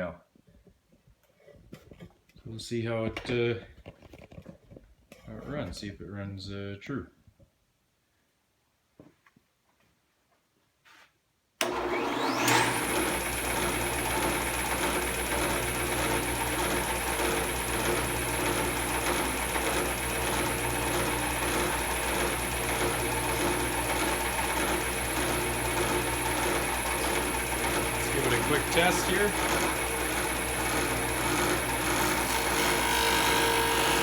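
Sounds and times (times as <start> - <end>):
table saw motor whining: 11.6 - 34.0.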